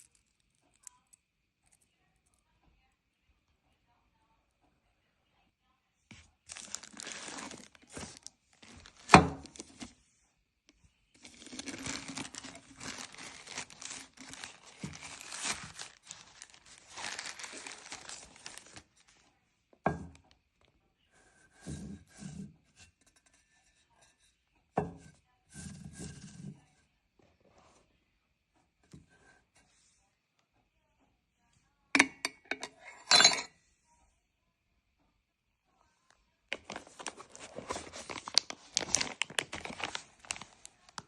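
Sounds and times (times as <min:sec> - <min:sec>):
gift packaging tearing and crinkling: 0:06.5 - 0:09.9, 0:11.2 - 0:19.2, 0:36.5 - 0:41.0.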